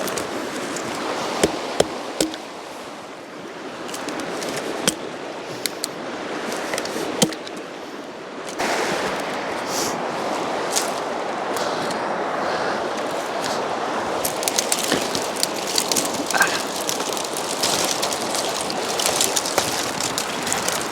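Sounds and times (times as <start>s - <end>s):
wood cracking and knocking: 0.0s - 2.6s, 6.7s - 7.6s, 14.2s - 20.9s
river water rushing: 0.0s - 20.9s.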